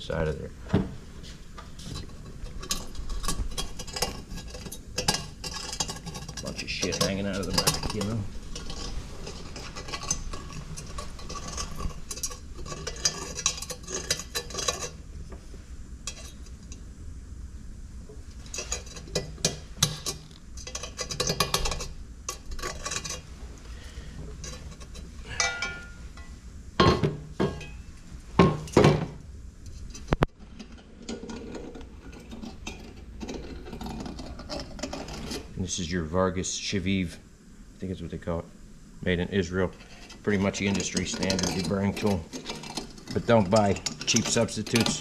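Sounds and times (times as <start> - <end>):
metal tools clinking on pipe: 2.6 - 14.9, 25.3 - 26.3.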